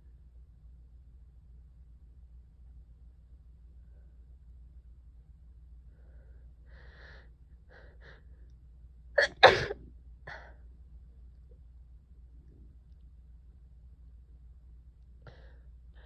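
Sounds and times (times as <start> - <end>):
person sneezing: 9.2 - 9.8.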